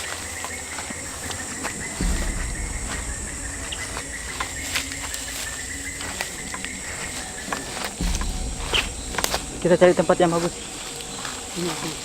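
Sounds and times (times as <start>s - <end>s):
footsteps on forest litter: 0.0s - 12.0s
insects chirring: 0.0s - 12.0s
microphone handling rumble: 1.8s - 11.4s.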